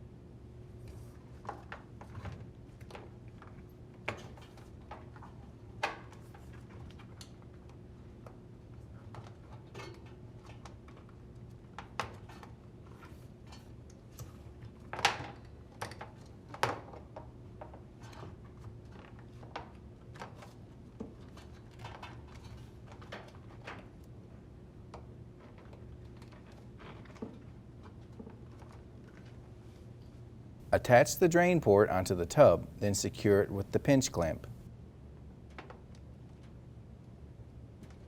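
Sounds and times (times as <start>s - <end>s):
steady low hum: 30.6s - 34.7s.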